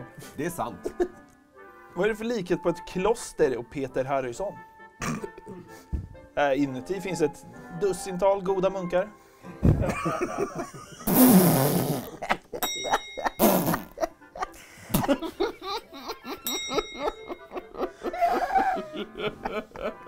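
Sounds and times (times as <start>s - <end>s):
people laughing: 9.5s - 11.1s, 12.0s - 20.0s
bell-like ding: 12.6s - 13.4s, 16.5s - 17.4s.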